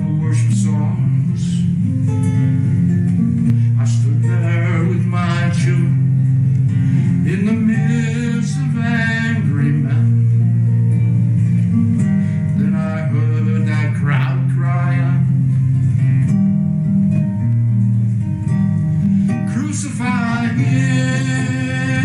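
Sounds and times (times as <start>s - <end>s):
person singing: 0.0s - 1.8s, 3.6s - 6.1s, 7.1s - 10.3s, 12.5s - 15.4s, 19.3s - 22.0s
acoustic guitar: 0.0s - 22.0s
sustained bass notes: 0.0s - 22.0s.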